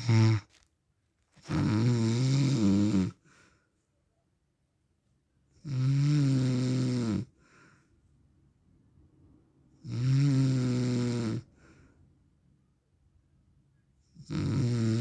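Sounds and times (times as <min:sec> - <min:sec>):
man snoring: 0:00.0 - 0:00.4, 0:01.5 - 0:03.2, 0:05.6 - 0:07.3, 0:09.8 - 0:11.5, 0:14.2 - 0:15.0
faint breath: 0:03.2 - 0:03.9, 0:07.3 - 0:08.2, 0:11.5 - 0:12.3.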